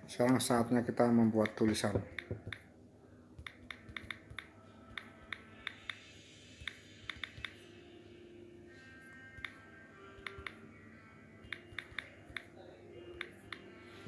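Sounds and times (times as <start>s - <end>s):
phone keyboard taps: 10.3s - 10.6s.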